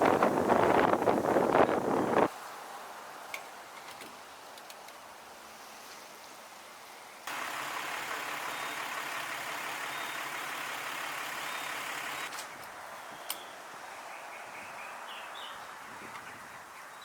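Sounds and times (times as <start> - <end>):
outdoor background noise: 0.0 - 17.0
vehicle engine humming: 7.3 - 12.4.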